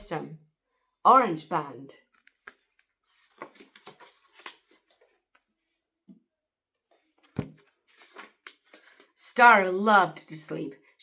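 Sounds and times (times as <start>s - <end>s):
book pages turning: 2.0s - 5.6s, 7.1s - 9.2s.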